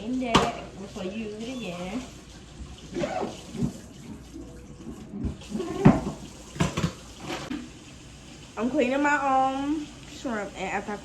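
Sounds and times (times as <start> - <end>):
faucet running into sink: 0.0 - 11.0
water splashes and knocks: 0.2 - 1.1, 1.9 - 7.8.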